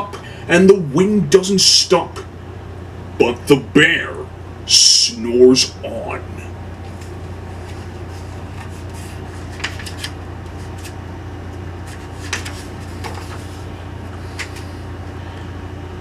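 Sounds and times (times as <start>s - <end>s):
steady low hum: 0.0s - 16.0s
book pages turning: 6.8s - 14.9s.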